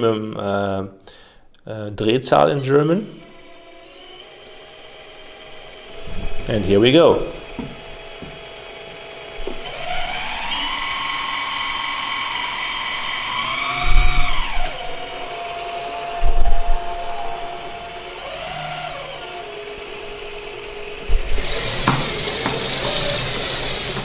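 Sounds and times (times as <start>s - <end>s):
hydraulic pump whine: 2.6s - 24.0s
heavy knocks: 7.4s - 8.5s, 21.0s - 24.0s.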